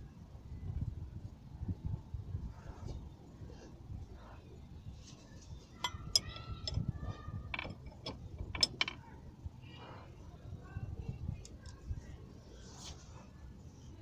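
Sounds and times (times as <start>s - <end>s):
metal tools clinking: 5.8s - 9.0s.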